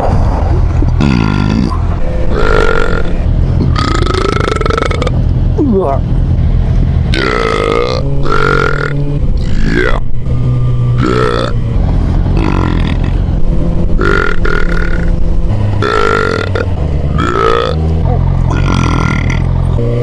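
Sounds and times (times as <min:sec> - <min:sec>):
low hum: 0:00.0 - 0:20.0
man belching: 0:00.9 - 0:05.2, 0:07.1 - 0:10.1, 0:11.0 - 0:11.6, 0:12.4 - 0:13.2, 0:14.0 - 0:15.1, 0:15.8 - 0:19.5.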